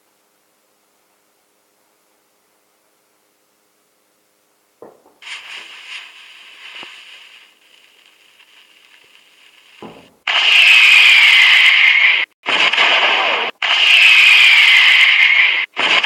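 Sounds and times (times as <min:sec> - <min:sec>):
firework hissing: 0:05.2 - 0:12.3
small clicks: 0:05.3 - 0:09.9.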